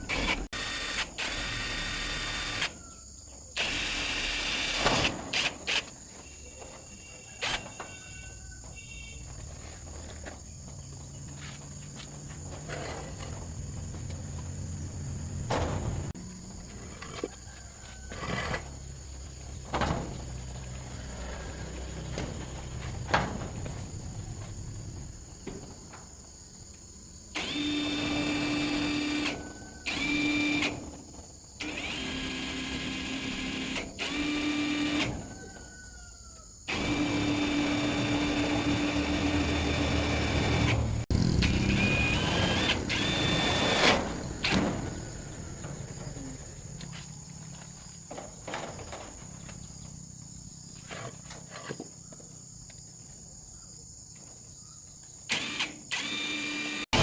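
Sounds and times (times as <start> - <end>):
power tool motor whining: 0.0 - 2.8, 27.4 - 30.7, 31.6 - 35.1, 36.7 - 44.6, 55.3 - 57.0.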